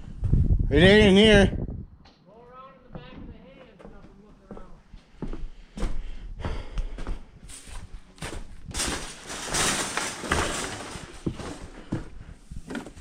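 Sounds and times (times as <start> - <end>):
footsteps with scuffs: 2.9 - 9.2
rustling: 7.5 - 13.0.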